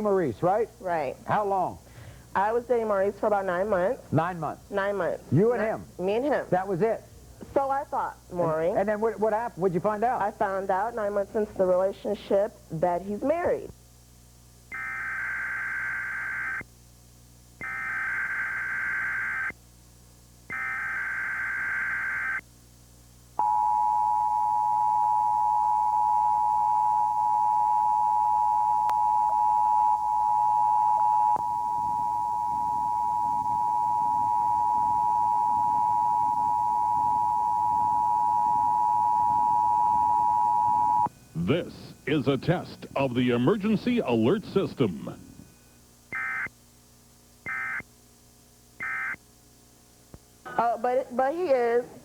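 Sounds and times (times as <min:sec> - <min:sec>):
digital data tone bursts: 0:48.8 - 0:49.2.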